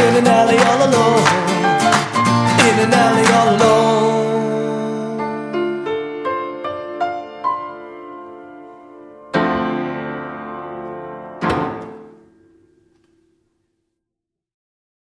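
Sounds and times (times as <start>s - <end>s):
piano notes and chords: 0.0s - 13.3s.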